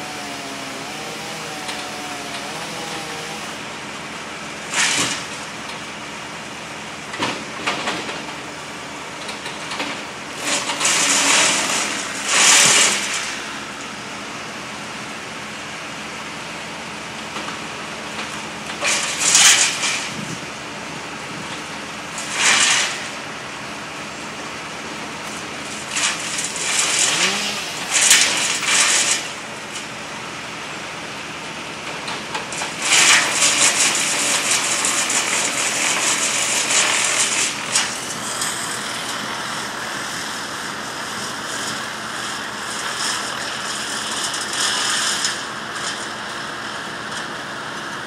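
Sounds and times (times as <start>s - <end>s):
engine running: 0.0s - 48.0s
crackling rustling branches: 17.3s - 30.6s.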